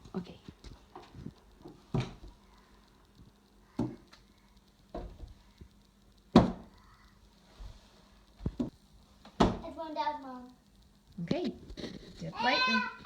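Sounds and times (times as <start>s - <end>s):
potato stamp thumps on paper: 6.3s - 6.7s.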